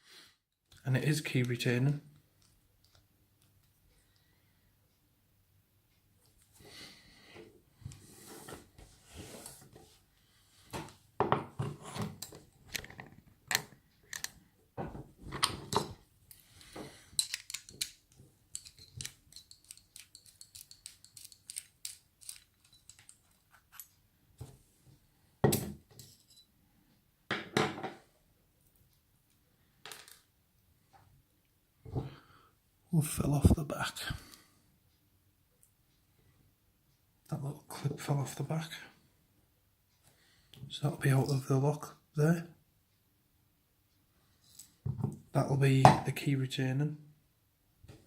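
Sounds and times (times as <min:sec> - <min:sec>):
padlock and key metal clicks: 0:17.2 - 0:23.9.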